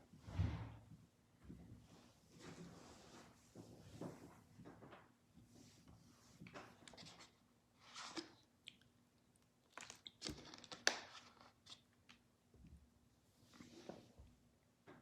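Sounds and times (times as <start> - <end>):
packaging rustling and crinkling: 9.7 - 11.8.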